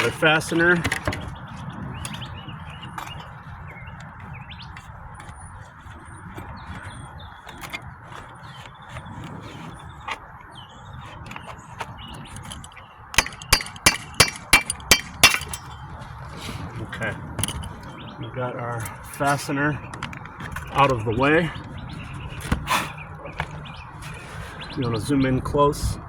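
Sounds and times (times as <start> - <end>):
birds chirping: 0.0 - 26.0
faint scraping: 18.6 - 25.1.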